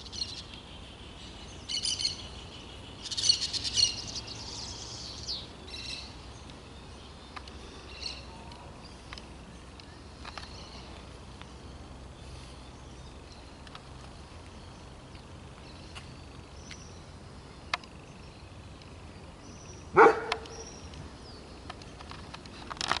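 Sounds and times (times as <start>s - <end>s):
dog bark: 20.0s - 20.7s.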